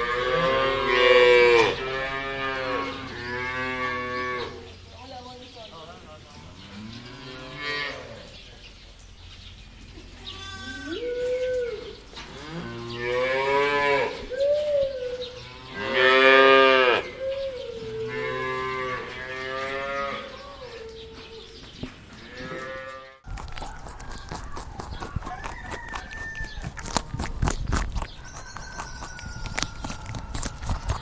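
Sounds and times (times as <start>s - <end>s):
cow mooing: 0.0s - 4.6s, 10.4s - 14.2s, 15.5s - 17.1s, 17.8s - 20.4s.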